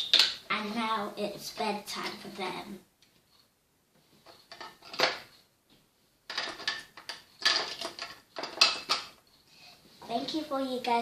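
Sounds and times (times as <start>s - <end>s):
plastic toys clicking and clattering: 0.0s - 0.4s, 4.2s - 5.3s, 6.3s - 9.2s.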